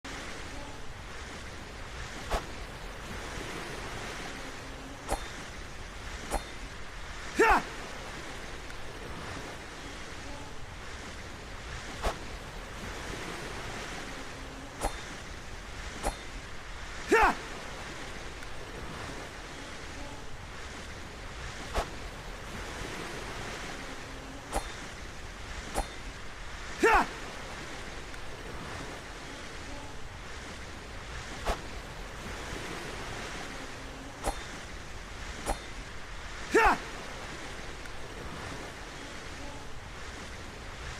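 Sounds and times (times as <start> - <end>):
steady rushing noise: 0.0 - 40.9
short falling shout: 7.4 - 7.8, 17.1 - 17.5, 26.8 - 27.2, 36.5 - 36.9.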